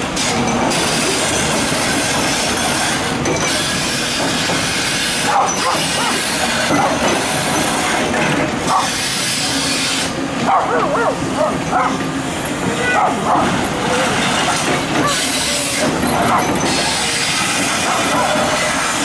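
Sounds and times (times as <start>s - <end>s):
excavator machine noise: 0.0s - 19.0s
high metallic squeals: 13.8s - 19.0s.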